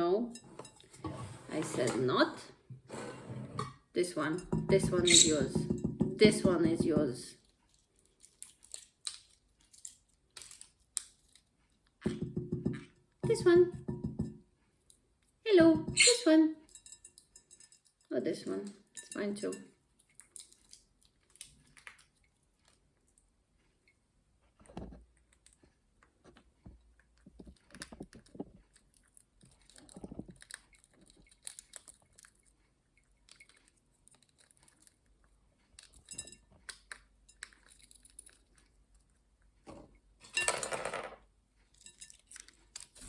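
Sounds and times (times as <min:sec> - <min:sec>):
bird cracking nuts with beak: 0:08.2 - 0:11.4.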